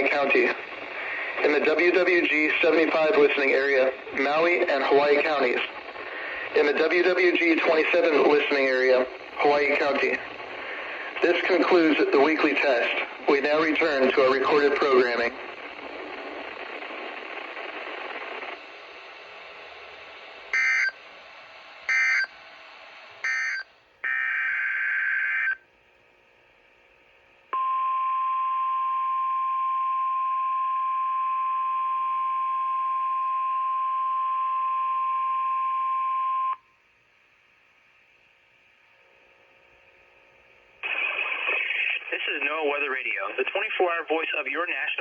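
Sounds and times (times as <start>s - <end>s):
steady warning alarm tone: 20.5s - 21.0s, 21.8s - 22.4s, 23.2s - 25.6s
screeching digital data bursts: 21.9s - 22.3s.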